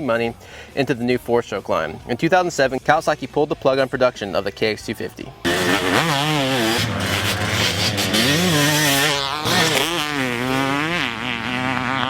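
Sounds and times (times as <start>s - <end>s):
motocross bike engine revving: 5.4s - 12.0s.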